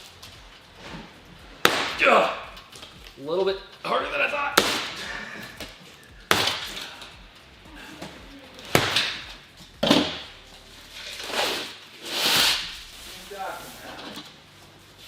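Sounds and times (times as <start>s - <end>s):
cardboard scraping: 10.8s - 14.3s.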